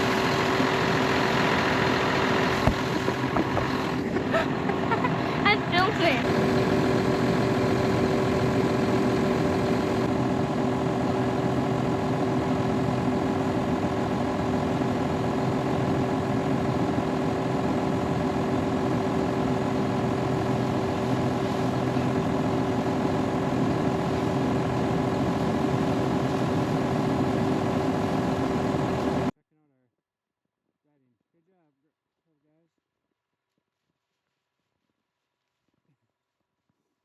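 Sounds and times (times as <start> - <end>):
vehicle engine running steadily: 0.0 - 29.3.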